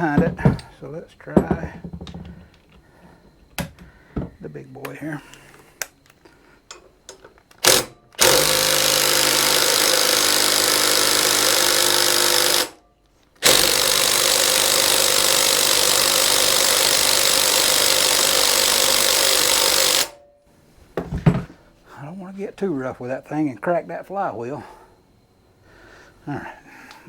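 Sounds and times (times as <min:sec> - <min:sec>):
impact wrench hammering: 0:00.0 - 0:00.7, 0:01.4 - 0:02.3, 0:07.6 - 0:12.8, 0:13.4 - 0:20.2
sharp knocks: 0:00.0 - 0:02.5.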